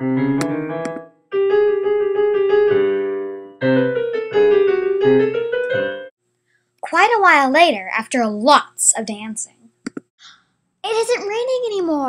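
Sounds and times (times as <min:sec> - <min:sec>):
piano melody: 0:00.0 - 0:06.1.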